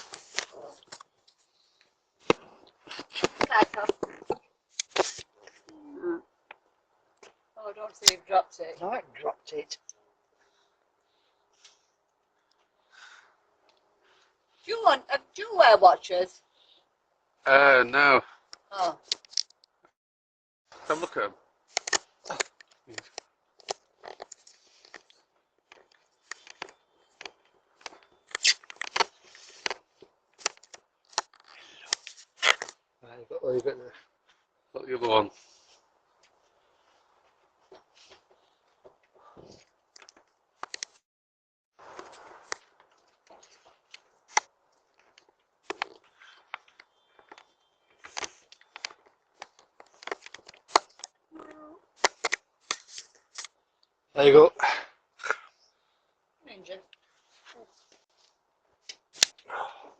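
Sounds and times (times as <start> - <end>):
sharp clicks and crackles: 21.7 - 32.8, 41.9 - 51.2.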